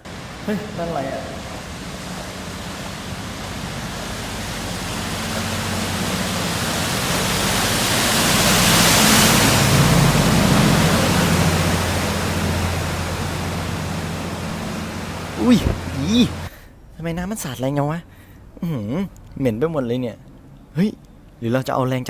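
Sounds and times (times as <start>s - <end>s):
water rushing and splashing: 0.0s - 16.5s
low hum: 9.4s - 17.2s.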